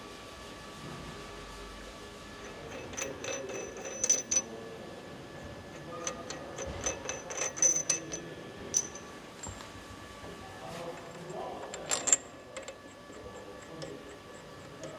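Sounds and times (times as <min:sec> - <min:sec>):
metal tools clinking on metal: 0:02.5 - 0:04.6, 0:05.8 - 0:09.7, 0:10.9 - 0:14.9.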